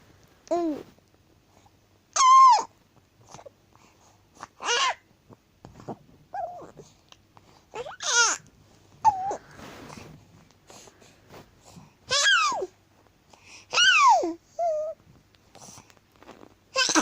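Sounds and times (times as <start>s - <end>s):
baby squeaking: 2.2s - 2.7s, 7.8s - 8.4s, 12.1s - 12.7s.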